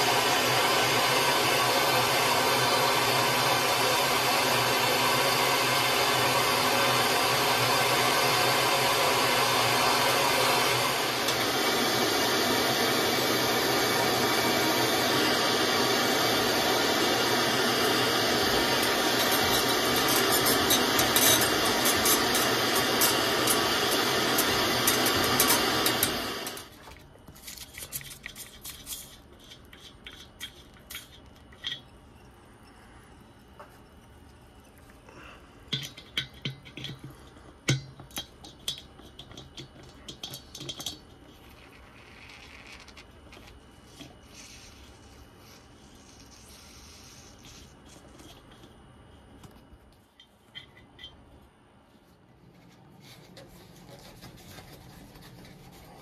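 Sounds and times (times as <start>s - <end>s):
tools clicking and knocking: 35.7s - 41.4s.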